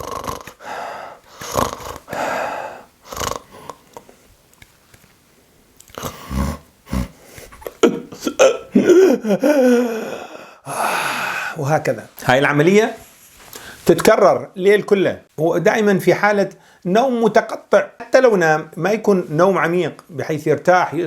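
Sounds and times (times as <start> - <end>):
man snoring: 0.0 - 3.9, 6.0 - 7.3
gasping groan: 0.0 - 4.1, 5.9 - 11.6
short heavy breaths: 0.6 - 3.0, 13.5 - 13.9.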